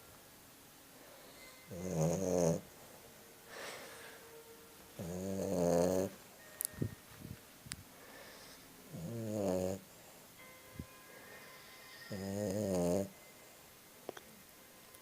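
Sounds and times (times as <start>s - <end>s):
dog snoring: 1.7s - 2.7s, 5.0s - 6.2s, 8.2s - 9.9s, 11.5s - 13.2s.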